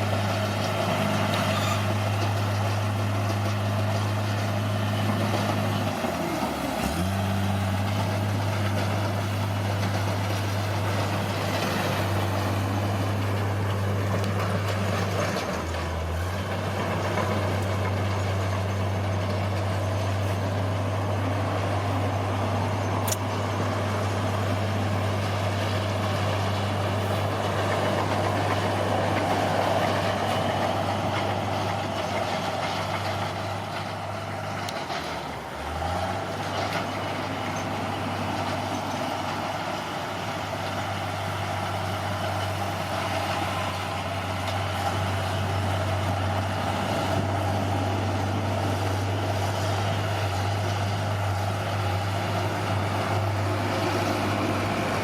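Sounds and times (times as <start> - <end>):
bulldozer diesel engine under load: 0.0 - 55.0.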